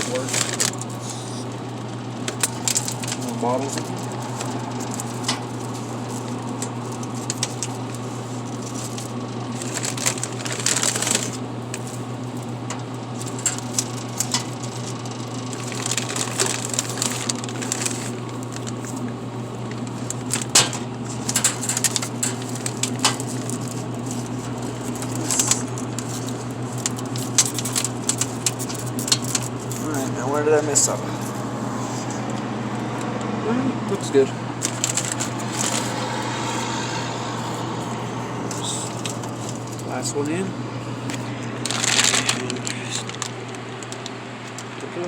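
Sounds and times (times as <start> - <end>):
vending machine hum: 0.0 - 45.0.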